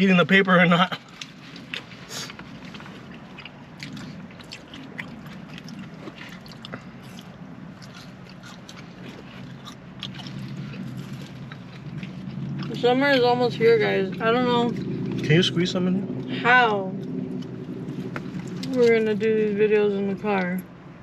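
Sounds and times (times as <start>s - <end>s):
low steady hum: 0.0s - 21.0s
chewing and biting food: 1.0s - 13.2s, 14.0s - 15.4s, 17.0s - 19.0s.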